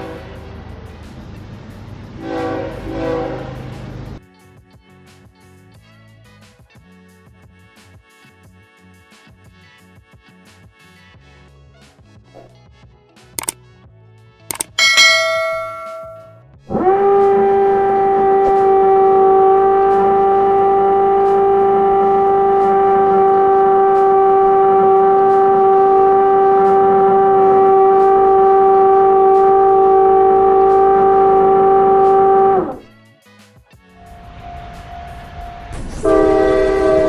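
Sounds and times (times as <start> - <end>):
loud train horn: 0.0 - 1.2, 2.1 - 4.2, 14.5 - 32.9, 34.0 - 37.0.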